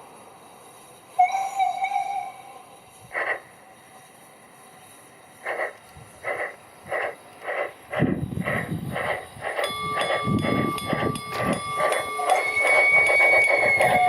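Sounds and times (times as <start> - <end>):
high whistle-like tones: 1.2 - 2.6, 9.6 - 14.0
steam locomotive puffing: 2.9 - 3.5, 5.0 - 14.0.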